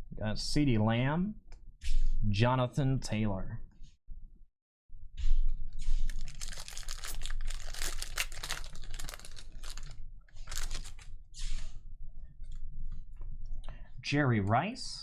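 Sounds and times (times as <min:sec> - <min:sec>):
foil wrappers tearing and crinkling: 0:06.0 - 0:11.1.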